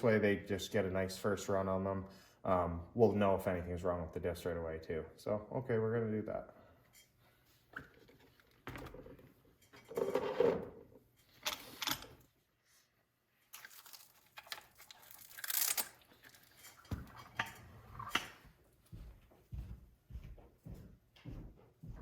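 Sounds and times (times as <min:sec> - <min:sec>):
crinkling: 0:13.5 - 0:17.6.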